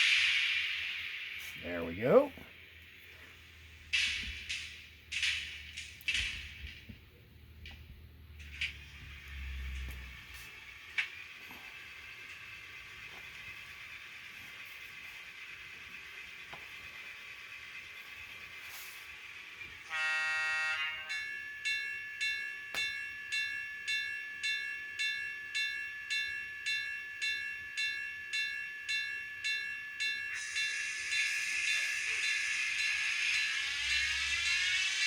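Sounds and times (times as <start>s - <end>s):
hiss: 0.0s - 1.8s, 10.4s - 19.9s
locomotive bell ringing: 0.0s - 5.8s, 8.5s - 35.0s
rising whine: 0.0s - 6.8s, 30.4s - 35.0s
locomotive horn blast: 19.9s - 21.1s.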